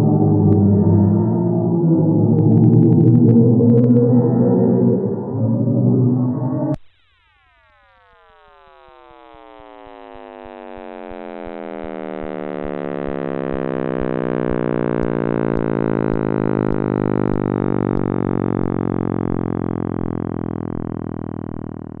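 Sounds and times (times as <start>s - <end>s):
synthesized tone sliding downward: 0.0s - 22.0s
faint low ticks: 9.2s - 22.0s.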